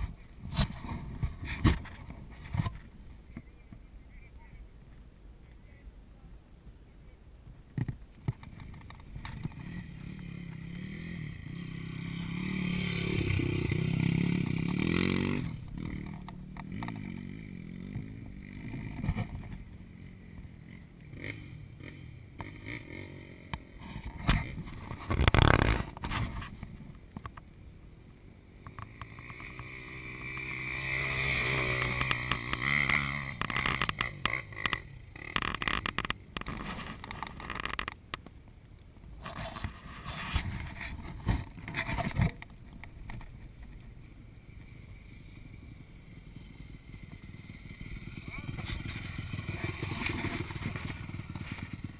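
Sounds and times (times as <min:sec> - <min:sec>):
knocks and clatter over rough ground: 0:00.0 - 0:03.9, 0:07.7 - 0:27.5, 0:28.6 - 0:44.0, 0:46.4 - 0:51.9
motorcycle engine revving: 0:08.6 - 0:26.6, 0:28.6 - 0:38.0, 0:44.5 - 0:51.9.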